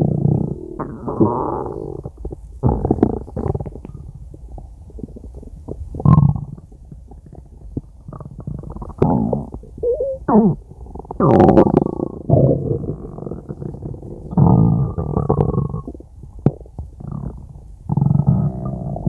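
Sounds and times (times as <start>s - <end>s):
stomach growling: 0.0s - 19.0s.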